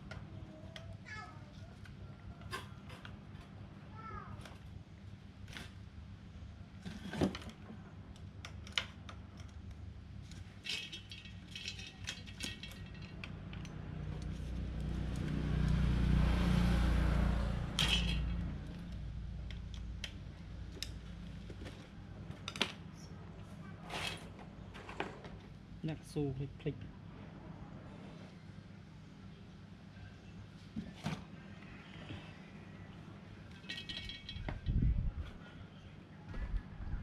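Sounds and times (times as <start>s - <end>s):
metal tools clinking: 10.6s - 13.8s, 17.8s - 18.5s, 33.5s - 34.7s.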